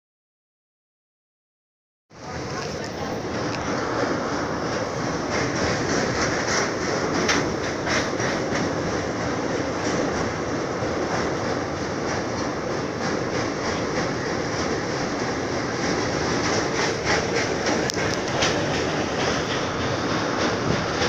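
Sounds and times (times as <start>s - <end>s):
train rumbling on rails: 2.1s - 21.0s
wheels clicking over rail joints: 2.2s - 21.0s.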